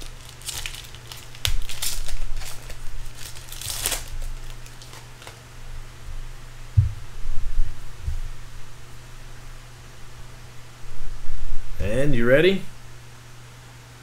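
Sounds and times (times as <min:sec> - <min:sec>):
cards being handled: 0:00.0 - 0:05.4
foil wrapper crinkling: 0:00.0 - 0:05.5
steady low hum: 0:00.0 - 0:14.0
soft thump: 0:06.7 - 0:08.3.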